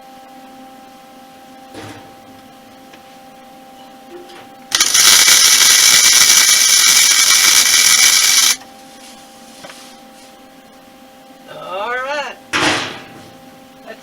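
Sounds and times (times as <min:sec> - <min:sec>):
welder hissing: 0:04.7 - 0:08.6.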